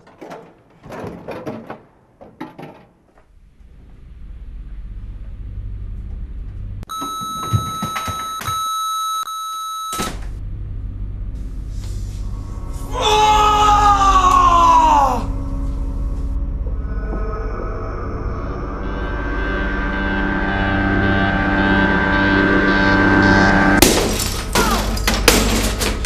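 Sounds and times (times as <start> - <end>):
electronic beep: 6.9 - 10.1, 20.7 - 23.8.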